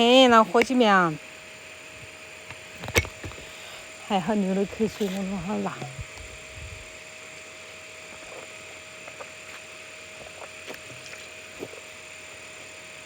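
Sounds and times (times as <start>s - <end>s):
outdoor background hiss: 0.0s - 13.0s.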